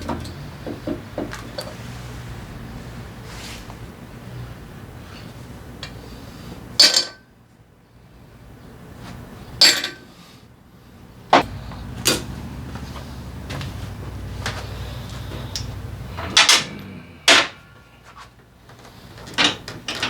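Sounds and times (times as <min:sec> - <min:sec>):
metal tools clanking: 0:11.4 - 0:20.0.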